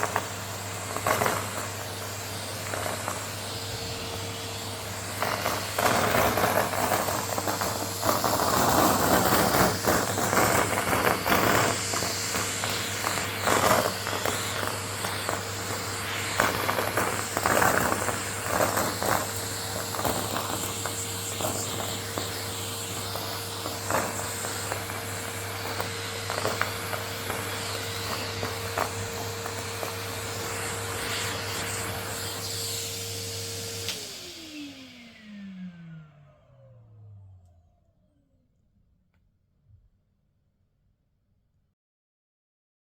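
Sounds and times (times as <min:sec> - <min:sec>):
vacuum cleaner running: 0:00.0 - 0:38.6
paper crackling up a hose: 0:04.8 - 0:32.2.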